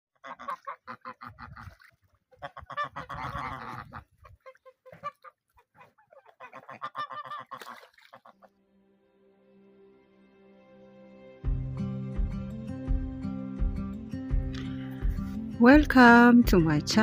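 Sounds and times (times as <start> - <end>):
geese honking: 0.2 - 8.5.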